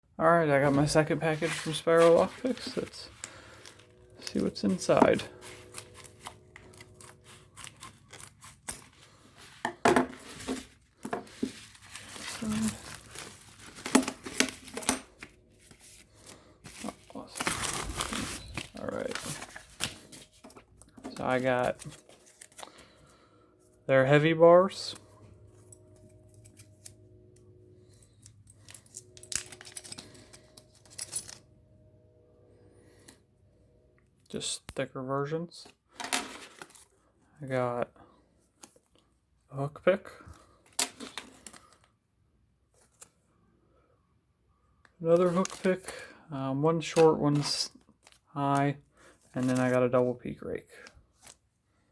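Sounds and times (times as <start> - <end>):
packaging rustling: 0.7 - 23.2, 45.1 - 46.1, 46.8 - 48.3
metal tools clicking and clinking: 28.7 - 31.4.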